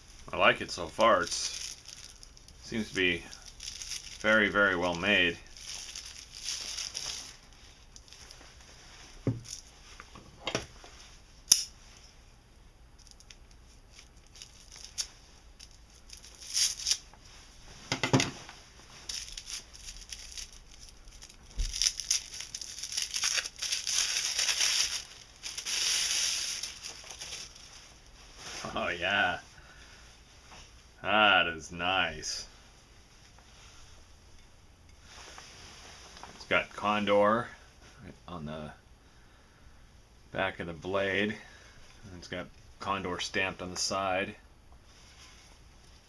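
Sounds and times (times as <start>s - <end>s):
packaging crinkling and rustling: 0.5s - 10.1s, 13.0s - 17.4s, 18.2s - 28.8s.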